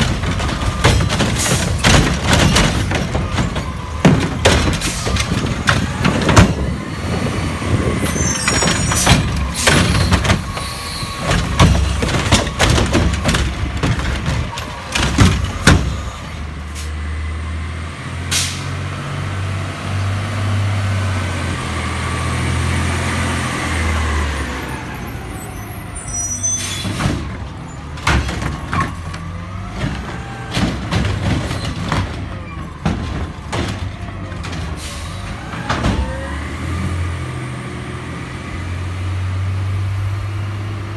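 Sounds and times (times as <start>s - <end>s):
garbage truck clanks and bangs: 0.0s - 40.9s
short high squeal: 8.0s - 9.1s, 25.4s - 27.0s.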